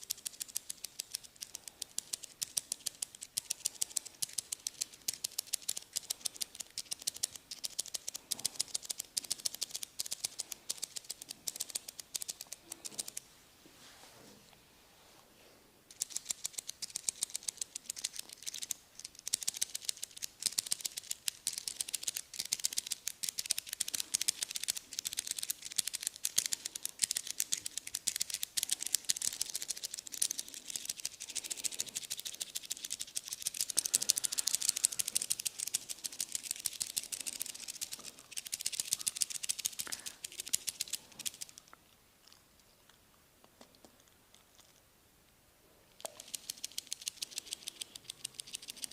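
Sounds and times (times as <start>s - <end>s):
hands massaging crackling: 0.0s - 13.2s, 15.9s - 41.6s.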